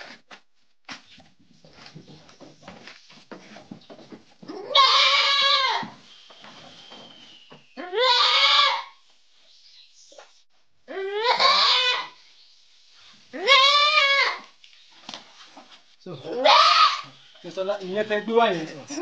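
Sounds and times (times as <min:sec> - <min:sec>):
faint knocks and scuffling: 0:00.0 - 0:04.7, 0:14.4 - 0:16.1
goat bleating: 0:04.5 - 0:05.9, 0:07.8 - 0:08.9, 0:11.0 - 0:12.2, 0:13.4 - 0:14.5, 0:16.2 - 0:17.1.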